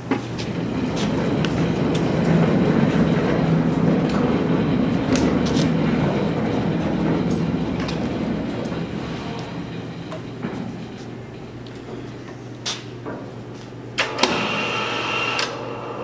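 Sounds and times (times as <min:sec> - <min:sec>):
heavy machine engine running: 0:00.0 - 0:12.2.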